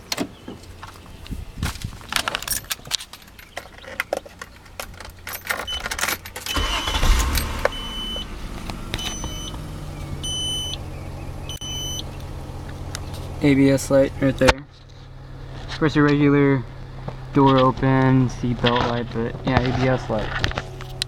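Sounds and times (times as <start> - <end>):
keys jangling: 2.2 - 6.6
car engine starting and idling: 4.3 - 21.0
car warning chime beeping: 6.5 - 8.4, 9.0 - 9.6, 10.2 - 10.8, 11.4 - 12.1.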